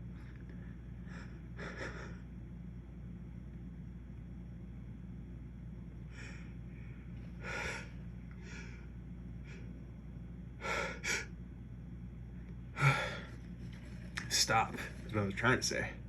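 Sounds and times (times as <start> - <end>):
man gasping sniffing breaths: 7.4 - 8.9, 12.8 - 13.4.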